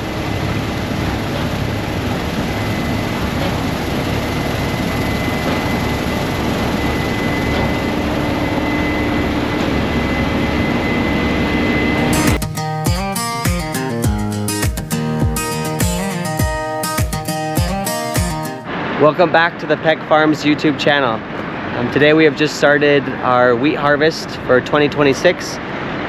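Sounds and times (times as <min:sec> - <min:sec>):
faint steady whine: 0:00.0 - 0:12.4
combine harvester engine running: 0:00.0 - 0:19.0.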